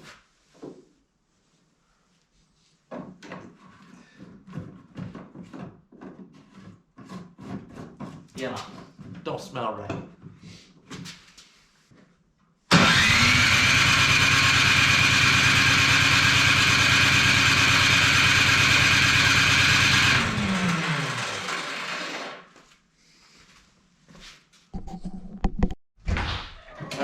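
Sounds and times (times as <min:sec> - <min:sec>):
electric starter cranking engine: 0:12.7 - 0:22.5.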